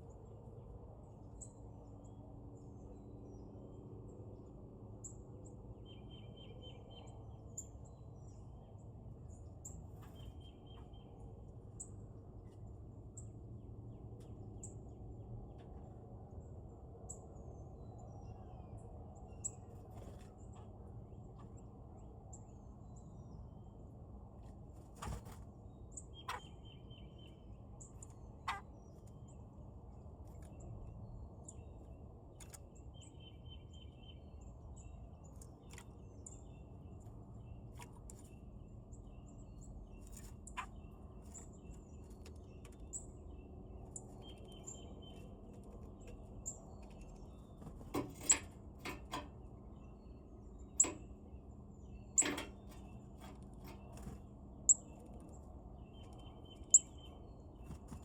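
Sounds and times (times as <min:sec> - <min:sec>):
low background hum: 0:00.0 - 0:58.0
birds calling: 0:26.0 - 0:27.1, 0:28.4 - 0:29.2.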